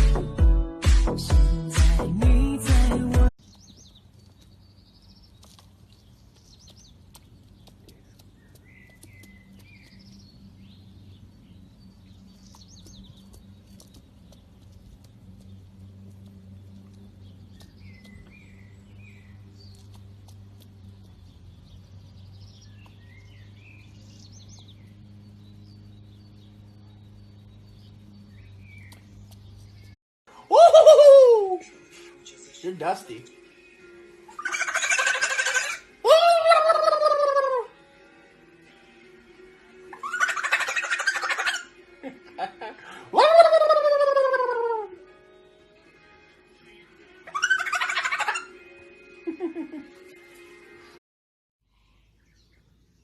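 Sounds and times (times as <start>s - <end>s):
bird chirping: 3.4s - 30.0s, 51.7s - 53.0s.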